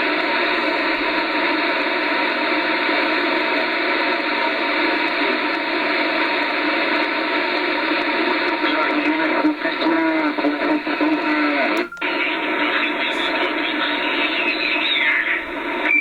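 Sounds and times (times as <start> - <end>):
radio static: 0.0 - 16.0
faint garbled radio voice: 1.5 - 16.0.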